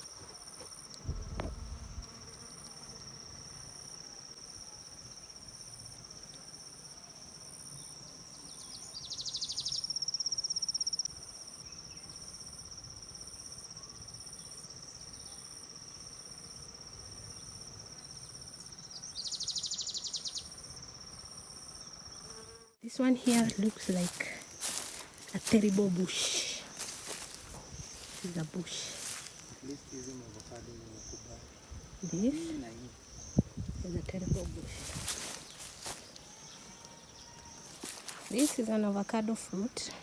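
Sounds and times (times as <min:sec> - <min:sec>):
insects trilling: 0:00.0 - 0:40.0
low thump: 0:01.0 - 0:01.9
fast-pulsing insect call: 0:18.1 - 0:40.0.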